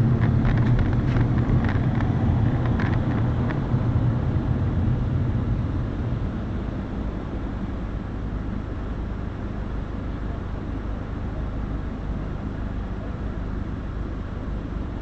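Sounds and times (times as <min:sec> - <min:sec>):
car engine and road noise: 0:00.0 - 0:15.0.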